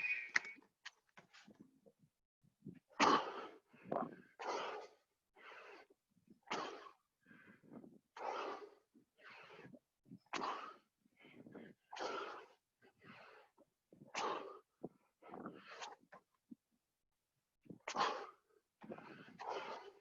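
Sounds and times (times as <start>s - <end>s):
person breathing hard: 3.2s - 6.0s, 6.6s - 9.8s, 10.7s - 15.9s.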